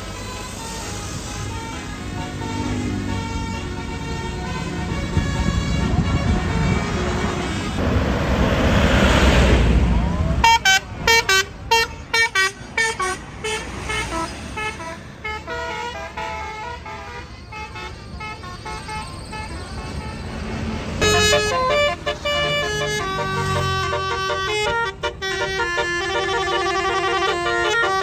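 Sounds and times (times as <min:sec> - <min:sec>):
bus musical horn melody: 0:00.0 - 0:07.8, 0:10.4 - 0:28.0
loud rushing hiss: 0:07.8 - 0:10.7.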